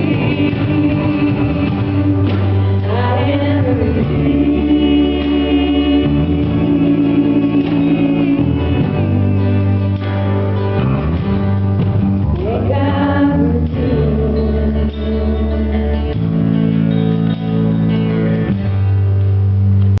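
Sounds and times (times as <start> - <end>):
gospel singing: 0.0 - 11.6, 12.2 - 17.4
held bass notes: 0.0 - 20.0
instrumental accompaniment: 0.0 - 20.0.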